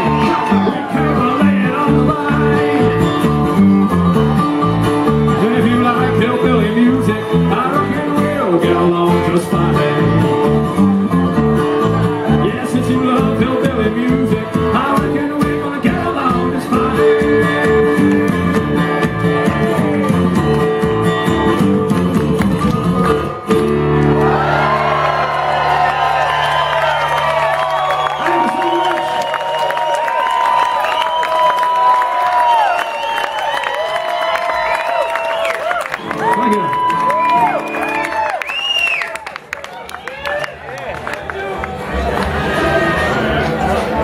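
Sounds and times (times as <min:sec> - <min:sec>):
guitar picking: 0:00.0 - 0:27.6
bass line: 0:00.0 - 0:29.0.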